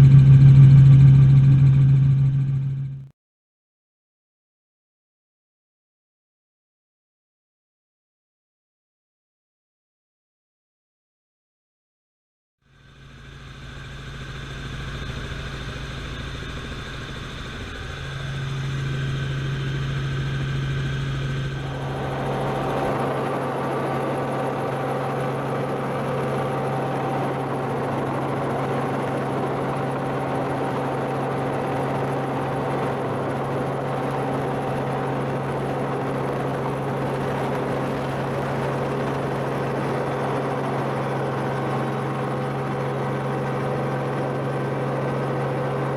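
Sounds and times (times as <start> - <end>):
helicopter running: 0.0 - 3.1, 13.1 - 45.9
broad rushing noise: 21.6 - 40.6.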